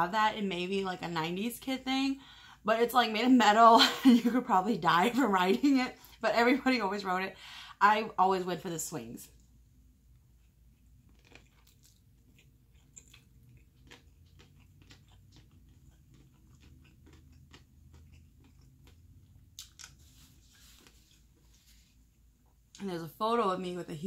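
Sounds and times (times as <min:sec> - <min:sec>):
person chewing noodles: 0:10.1 - 0:21.8.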